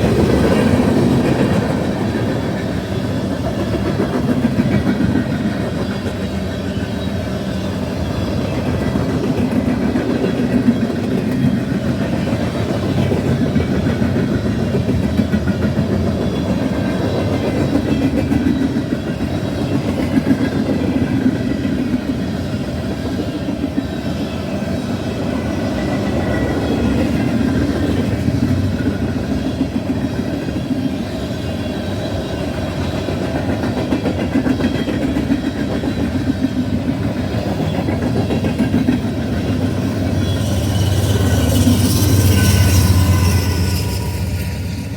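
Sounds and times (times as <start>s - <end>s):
clickety-clack of wheels: 0.0s - 44.9s
train wheels rumbling on rail: 0.0s - 44.9s
faint wheel squeal: 39.9s - 44.9s.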